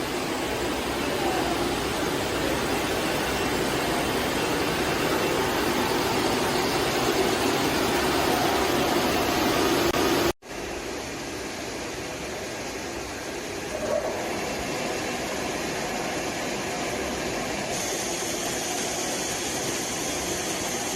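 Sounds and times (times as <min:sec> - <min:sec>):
boring machine running: 0:00.0 - 0:10.3.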